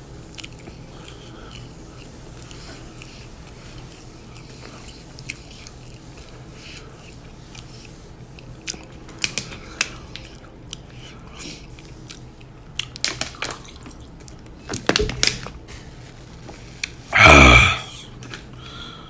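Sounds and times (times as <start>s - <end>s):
chewing crunchy food: 0.1s - 14.6s.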